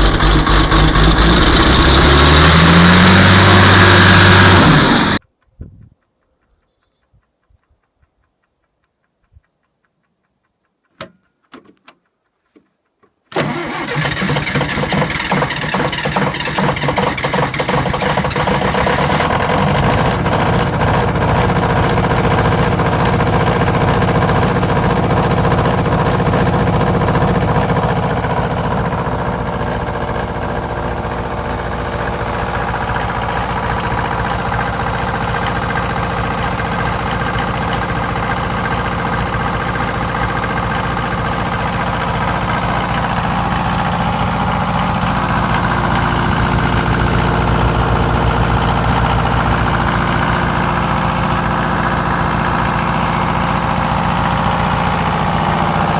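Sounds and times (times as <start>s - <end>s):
diesel generator running: 0.0s - 5.2s, 13.4s - 55.9s.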